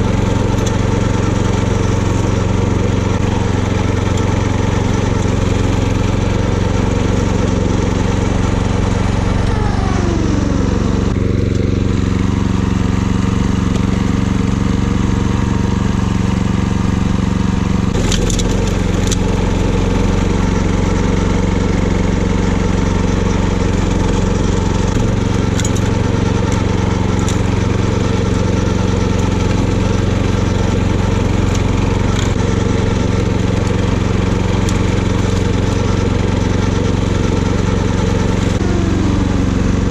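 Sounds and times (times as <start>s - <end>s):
mower engine running: 0.0s - 39.9s
debris clicks from mower blades: 18.0s - 19.8s, 24.8s - 36.4s.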